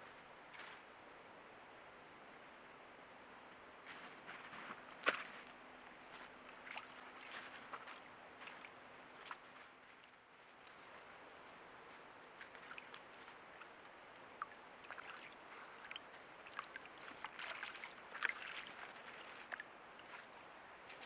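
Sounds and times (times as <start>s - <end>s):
creek water running: 6.0s - 9.8s, 10.5s - 21.0s
small water splashes and drips: 6.5s - 9.6s, 12.4s - 20.5s.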